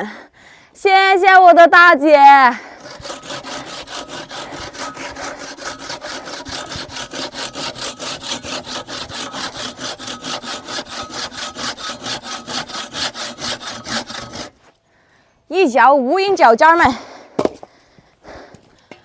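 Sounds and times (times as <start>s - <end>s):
hand saw cutting wood: 2.8s - 14.7s.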